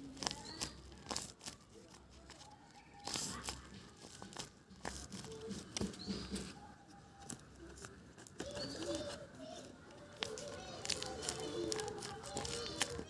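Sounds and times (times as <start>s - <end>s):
hands crinkling and tearing squishy: 0.0s - 5.5s, 7.1s - 13.0s.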